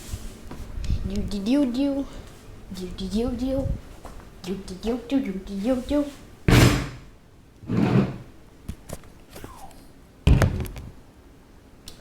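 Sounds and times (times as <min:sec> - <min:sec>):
sharp loud thumps: 0:06.5 - 0:07.1.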